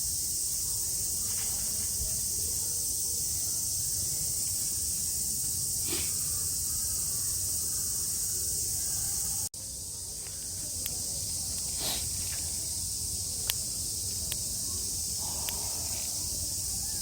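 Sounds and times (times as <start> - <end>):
insects chorus: 0.0 - 17.0
sharp clicks: 15.3 - 15.7.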